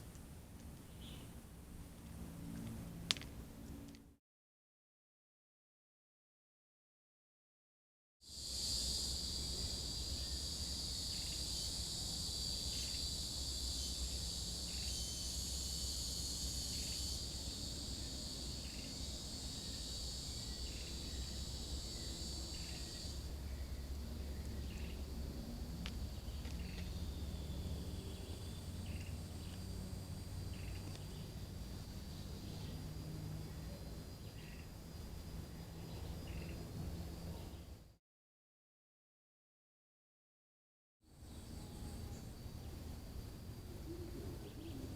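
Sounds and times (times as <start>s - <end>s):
high-pitched insect chorus: 8.3s - 37.9s, 41.1s - 44.9s
insect chirps: 8.3s - 37.9s, 41.1s - 44.9s.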